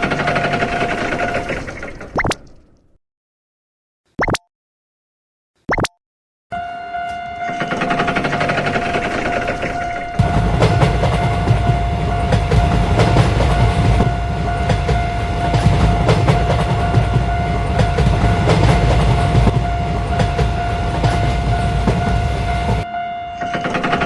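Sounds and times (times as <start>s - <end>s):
train rumble: 0.0s - 2.1s, 6.6s - 24.0s
wheels clattering over rail joints: 0.0s - 2.8s, 6.9s - 24.0s
steady high tone: 6.5s - 24.0s.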